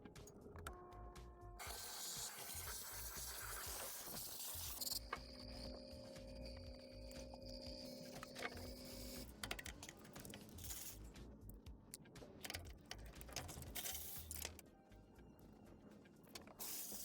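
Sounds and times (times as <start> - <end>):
steady hum: 1.5 - 11.8.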